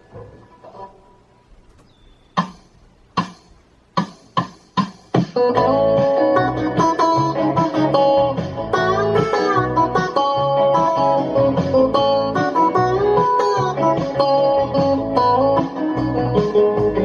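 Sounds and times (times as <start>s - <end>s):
electric guitar playing: 5.2s - 17.0s.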